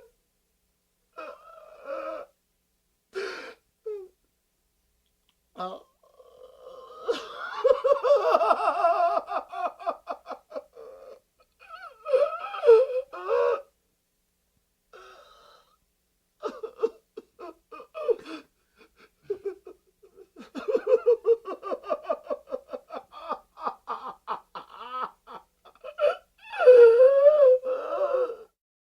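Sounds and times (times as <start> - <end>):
man sobbing and wailing: 6.9 - 13.7, 16.4 - 28.6.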